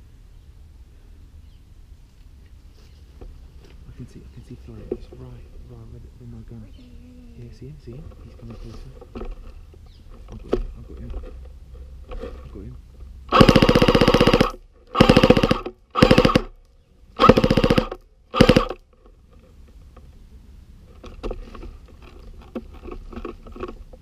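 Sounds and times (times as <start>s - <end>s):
airsoft gun firing full-auto: 13.3s - 16.5s, 17.2s - 18.8s.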